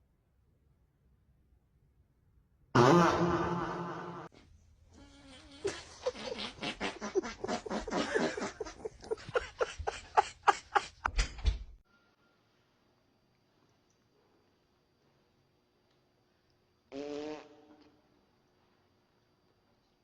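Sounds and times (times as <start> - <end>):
long sputtering fart: 2.8 - 4.2, 5.0 - 9.1.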